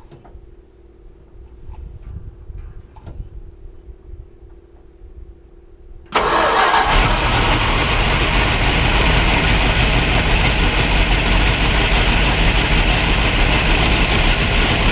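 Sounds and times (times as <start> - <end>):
engine starting and rumbling: 6.1 - 14.9.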